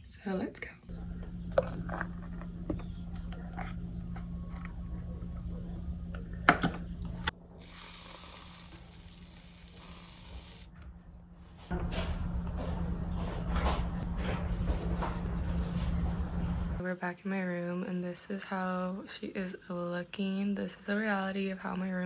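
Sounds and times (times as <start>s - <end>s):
coffee machine humming: 0.9s - 16.8s
loud steam hiss: 7.6s - 10.7s.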